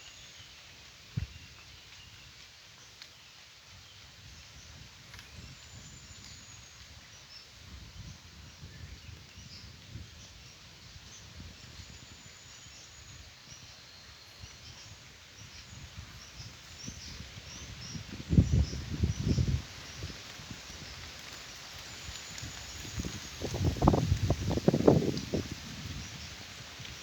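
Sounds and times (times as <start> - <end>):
wind gusting on microphone: 4.2 - 12.3, 15.4 - 21.2, 21.9 - 27.0.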